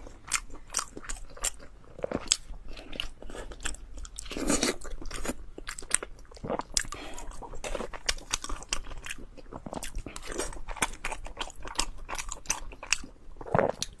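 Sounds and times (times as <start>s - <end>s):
person chewing food: 0.0s - 14.0s.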